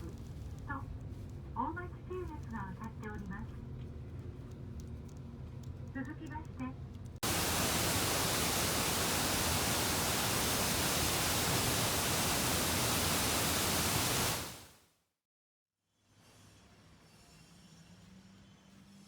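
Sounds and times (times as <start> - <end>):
mountain stream rushing: 7.2 - 14.7.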